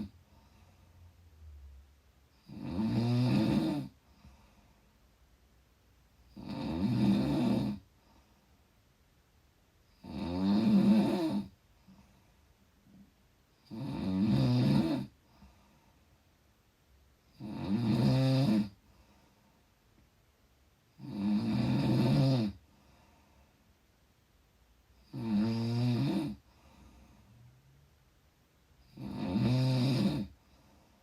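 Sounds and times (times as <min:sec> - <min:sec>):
person snoring: 0:02.4 - 0:04.0, 0:06.3 - 0:07.9, 0:09.9 - 0:11.5, 0:13.6 - 0:15.2, 0:17.3 - 0:18.8, 0:21.0 - 0:22.6, 0:25.0 - 0:26.4, 0:28.8 - 0:30.4.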